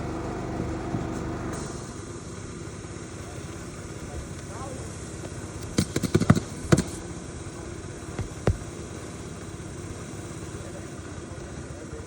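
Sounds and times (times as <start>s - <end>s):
engine hum: 0.0s - 12.0s
nails hammered into roof shingle: 5.2s - 7.2s, 7.9s - 9.1s.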